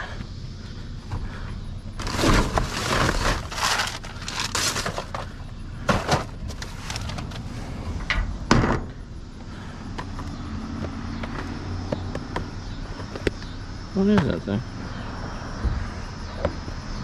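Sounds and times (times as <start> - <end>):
plastic junk crinkling and clattering: 2.0 - 7.5.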